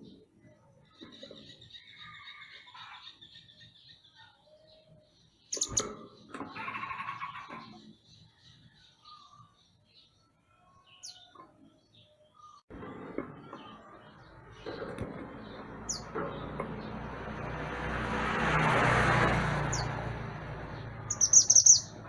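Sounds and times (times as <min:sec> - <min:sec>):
songbird chirping and whistling: 0:21.1 - 0:22.0.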